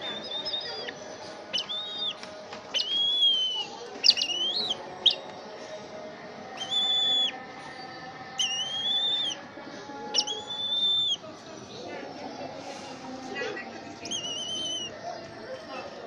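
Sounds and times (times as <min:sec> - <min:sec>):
eagle whistled calls: 0:00.0 - 0:05.3, 0:06.6 - 0:07.4, 0:08.4 - 0:09.4, 0:10.1 - 0:11.3, 0:14.0 - 0:15.2.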